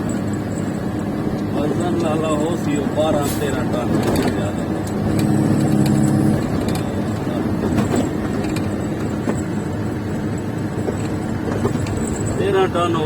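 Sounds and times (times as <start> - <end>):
truck engine rumbling: 0.0 - 13.0
pitched hum: 3.8 - 12.4.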